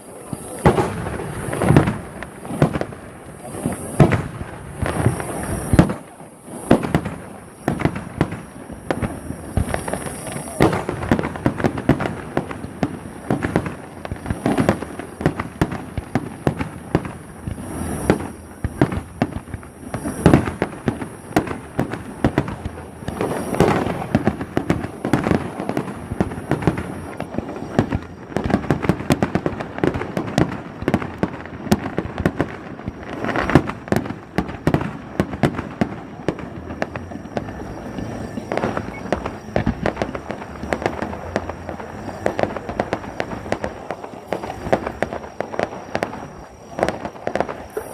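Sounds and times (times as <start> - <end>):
fireworks bangs and pops: 0.0 - 47.9
heavy firework booms: 0.2 - 47.9.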